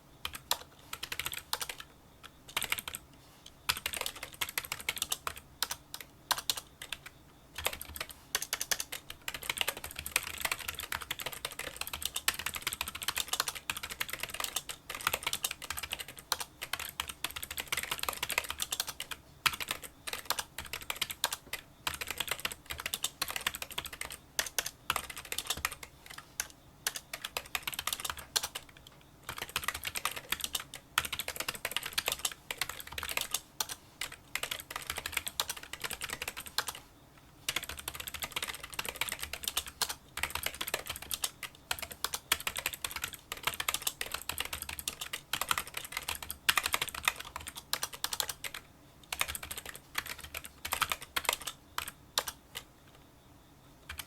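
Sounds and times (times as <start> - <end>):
fast typing on keyboard: 0.2 - 1.9, 2.5 - 3.0, 3.7 - 36.8, 37.5 - 52.7.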